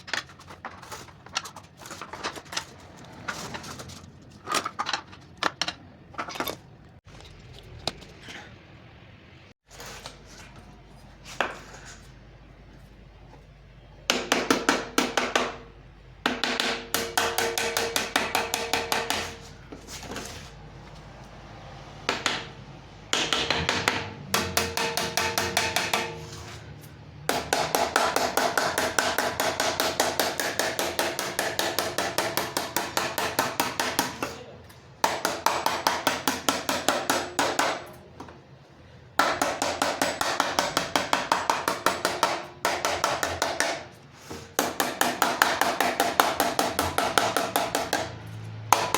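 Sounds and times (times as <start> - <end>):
hammer tapping on metal: 16.2 - 19.4, 23.1 - 26.2.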